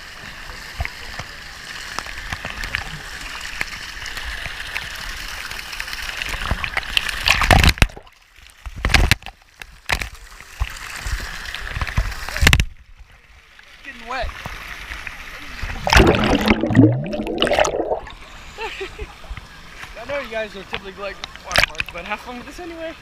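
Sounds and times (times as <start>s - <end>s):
water splashes: 0.0s - 23.0s
water sloshing and lapping: 5.8s - 18.6s.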